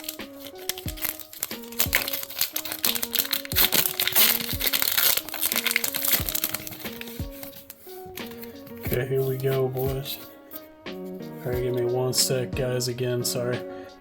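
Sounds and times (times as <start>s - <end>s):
foil pack crinkling: 0.0s - 9.8s
background music with deep beat: 0.0s - 14.0s.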